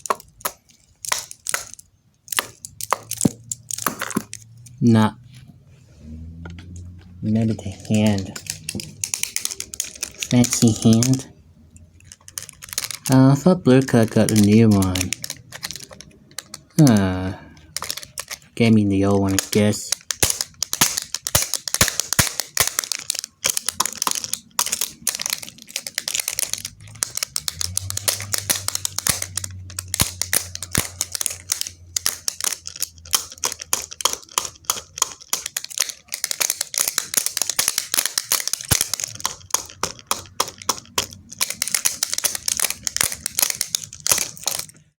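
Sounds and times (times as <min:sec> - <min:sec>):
rapid tapping on hard surface: 0:19.3 - 0:44.7.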